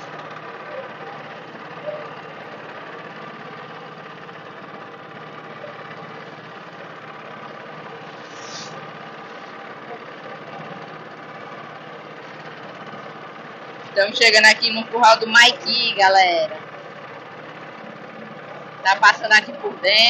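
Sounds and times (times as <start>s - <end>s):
boat engine running: 0.0s - 20.0s
brief hiss: 8.2s - 8.8s.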